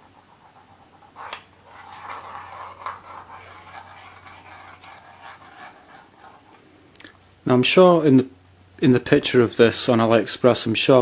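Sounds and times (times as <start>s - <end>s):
plastic rubbing and scraping: 0.6s - 6.6s.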